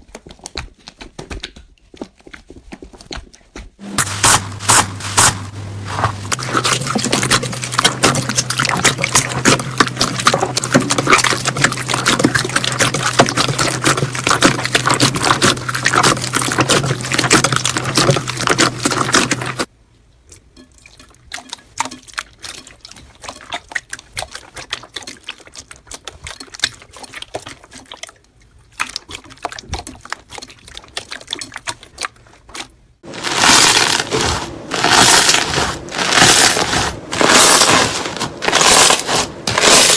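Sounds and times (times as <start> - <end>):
low steady hum: 3.8 - 21.0, 33.0 - 39.9
slime squishing and popping: 4.0 - 19.7, 33.1 - 39.9.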